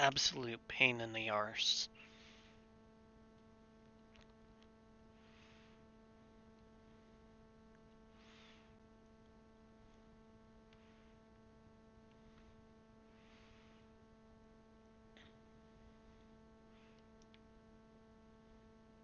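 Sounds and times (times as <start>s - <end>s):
faint electrical hum: 0.0s - 19.0s
faint ticks: 16.9s - 17.5s.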